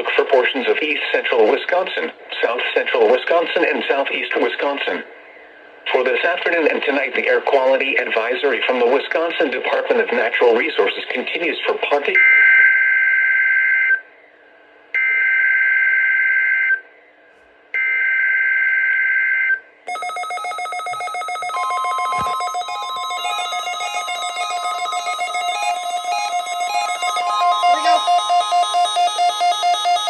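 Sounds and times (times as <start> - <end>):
steady high tone: 19.9 - 30.0
harsh two-tone data warbles: 20.9 - 30.0
repeating electronic tune: 21.5 - 30.0.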